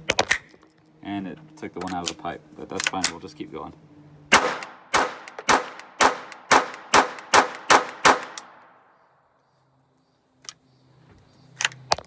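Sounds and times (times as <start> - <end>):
pistol shots with ringing echo: 4.3 - 8.8.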